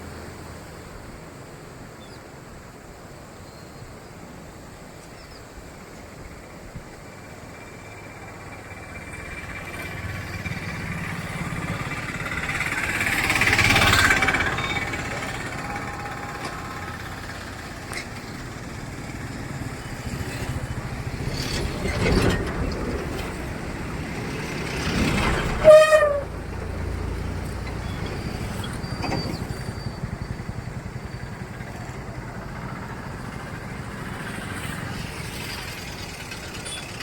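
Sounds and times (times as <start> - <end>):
road and engine noise: 0.0 - 37.0
vehicle horn blast: 25.5 - 26.4.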